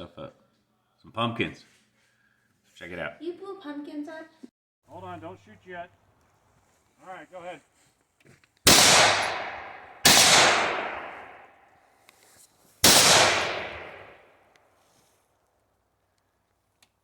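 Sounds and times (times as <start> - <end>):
rifle shots with echo: 8.7 - 11.6, 12.8 - 14.3.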